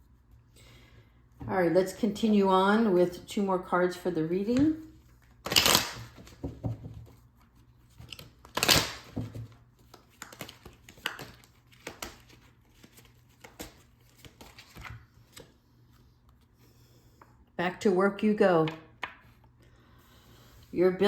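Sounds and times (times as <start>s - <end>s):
cards being shuffled: 5.2s - 6.5s, 7.4s - 15.6s
cards flicked and tapped down: 8.0s - 12.4s.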